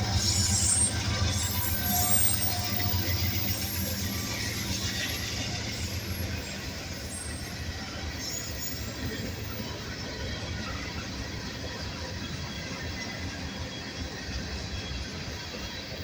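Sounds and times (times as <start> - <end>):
locomotive engine drone: 0.0 - 16.0
wheels rumbling on rails: 0.0 - 16.0.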